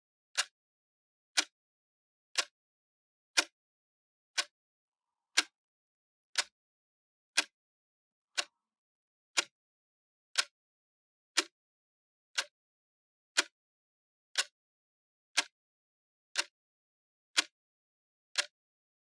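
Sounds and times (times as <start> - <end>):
clock ticking: 5.4 - 5.6.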